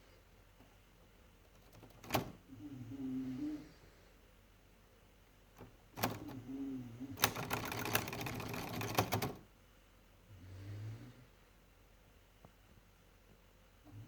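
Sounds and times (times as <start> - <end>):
typewriter key clicks: 1.6 - 2.4, 5.6 - 6.4, 7.2 - 9.4.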